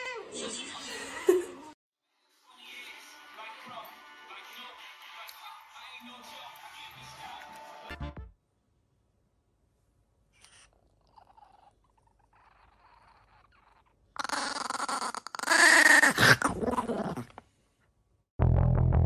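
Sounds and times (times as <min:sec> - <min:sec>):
dog vocalizing loudly: 0:10.9 - 0:17.3.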